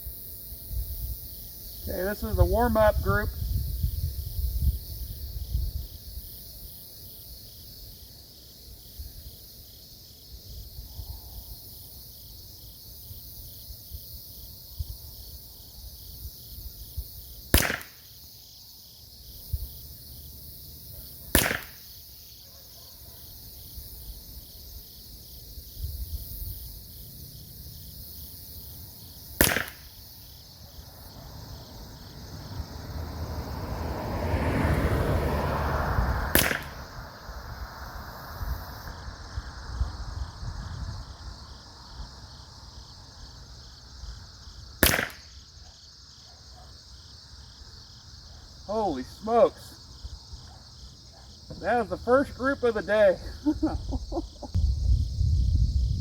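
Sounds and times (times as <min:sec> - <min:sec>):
rifle shots: 0:17.5 - 0:18.0, 0:21.3 - 0:21.8, 0:29.4 - 0:30.0, 0:36.3 - 0:36.8, 0:44.8 - 0:45.3.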